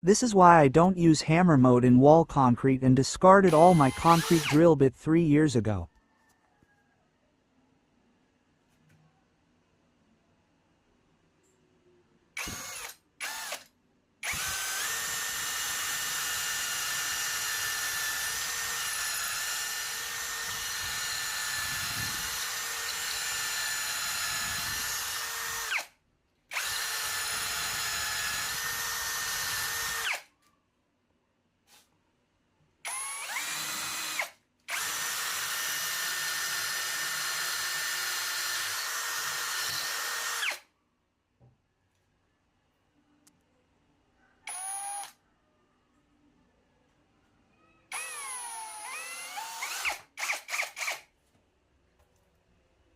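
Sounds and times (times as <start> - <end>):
power drill whining: 3.5 - 4.6, 12.4 - 25.9, 26.5 - 30.3, 32.9 - 40.6, 44.5 - 45.2, 47.9 - 51.0.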